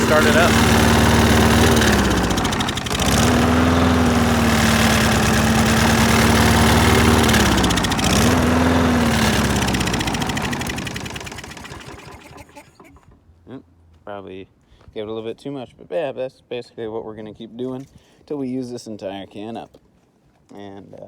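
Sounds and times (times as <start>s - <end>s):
lawn mower engine bogging: 0.0s - 13.2s.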